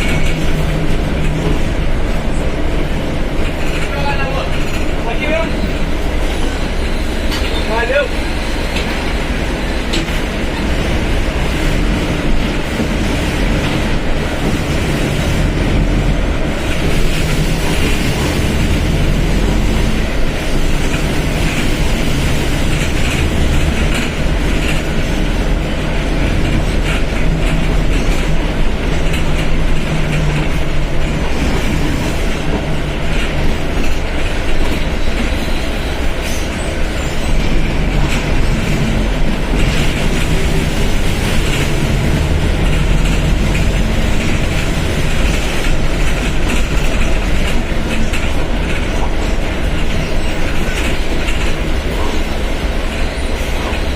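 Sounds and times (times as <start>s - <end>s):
bus diesel engine running: 0.0s - 53.9s.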